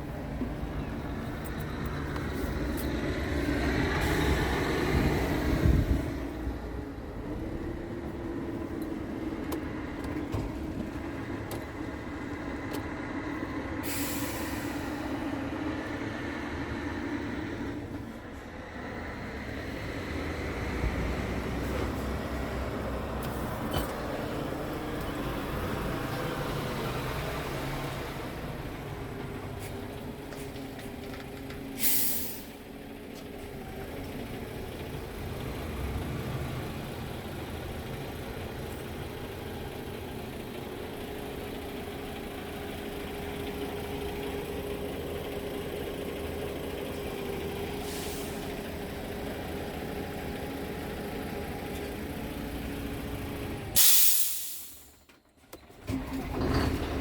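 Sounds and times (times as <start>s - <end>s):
diesel truck engine idling: 0.0s - 57.0s
compressed air hissing: 53.8s - 54.9s.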